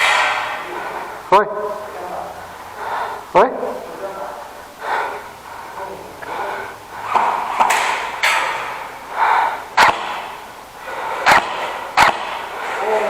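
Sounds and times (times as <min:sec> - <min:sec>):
person breathing hard: 0:02.6 - 0:03.3, 0:04.7 - 0:07.4, 0:08.6 - 0:12.9
airsoft gun shots: 0:09.8 - 0:10.5, 0:11.2 - 0:12.5.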